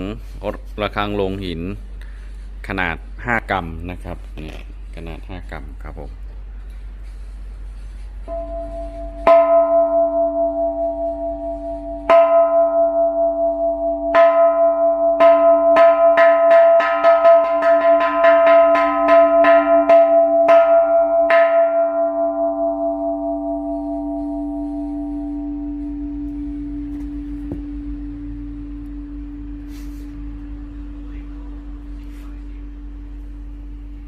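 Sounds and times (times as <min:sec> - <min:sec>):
bell struck and ringing: 0:08.2 - 0:32.0.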